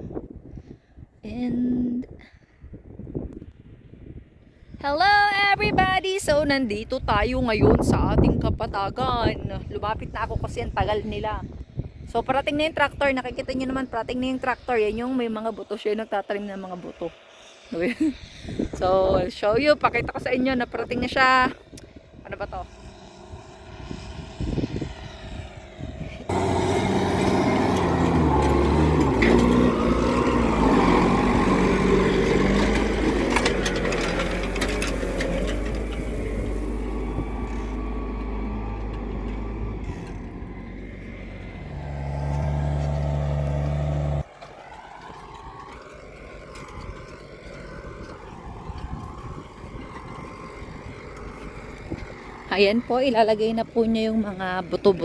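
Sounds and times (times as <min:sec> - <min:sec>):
faint engine: 0:00.0 - 0:55.0
outdoor noise: 0:00.0 - 0:55.0
tractor engine running: 0:21.7 - 0:55.0.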